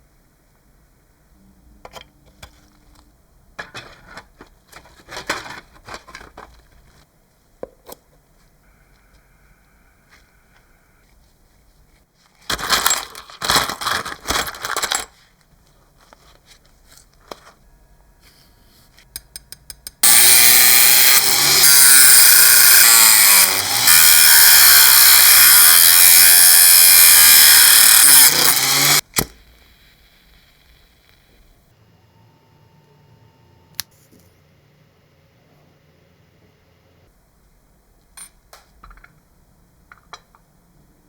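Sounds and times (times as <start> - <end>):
rough noisy tool bursts: 20.0 - 31.4.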